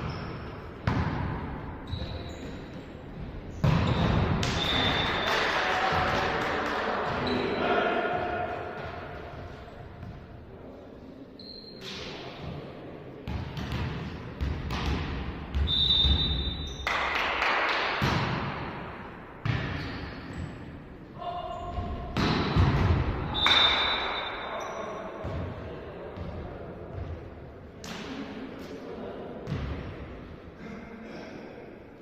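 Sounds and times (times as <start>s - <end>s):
volleyball being hit: 21.7s - 24.2s.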